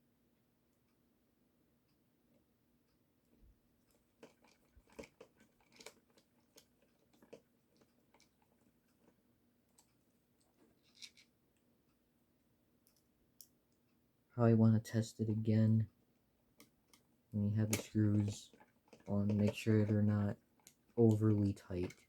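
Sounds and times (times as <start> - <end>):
small plastic parts clicking: 3.9 - 11.3, 16.6 - 22.0.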